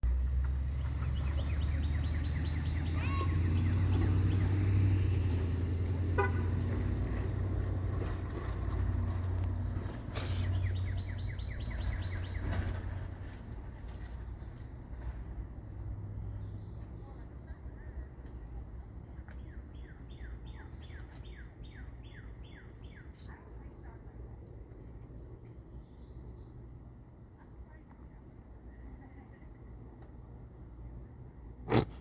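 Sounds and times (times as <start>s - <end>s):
kittens mewing: 31.7s - 32.0s.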